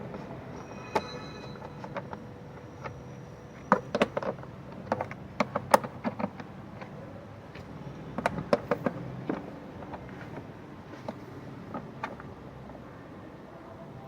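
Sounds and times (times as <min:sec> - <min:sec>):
hand tools clicking and knocking: 0:03.6 - 0:07.0.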